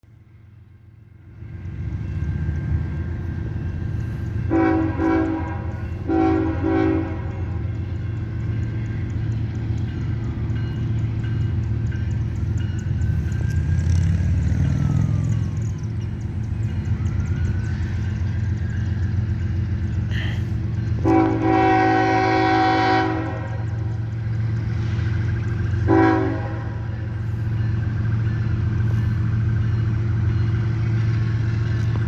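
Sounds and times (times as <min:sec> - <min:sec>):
diesel locomotive rumbling: 0:00.0 - 0:32.0
train air horn blasts: 0:04.4 - 0:07.7, 0:21.0 - 0:23.9, 0:25.8 - 0:27.1.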